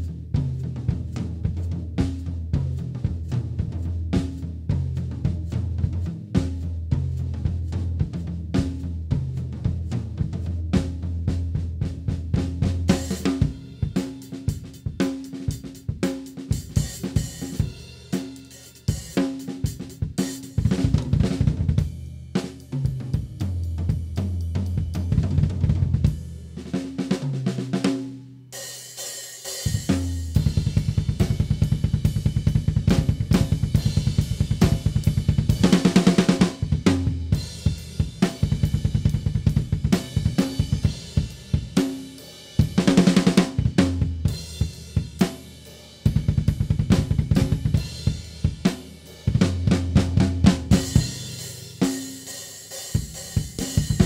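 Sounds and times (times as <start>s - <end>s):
drum kit playing: 0.0s - 54.0s
hi-hat and cymbals: 12.9s - 20.8s, 21.8s - 25.1s, 28.5s - 43.3s, 44.2s - 49.4s, 50.7s - 54.0s.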